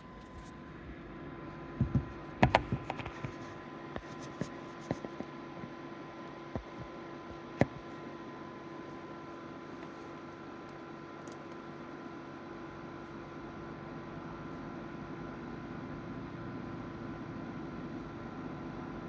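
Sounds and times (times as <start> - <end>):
electrical hum: 0.0 - 19.0
sharp clicks and knocks: 1.8 - 3.4.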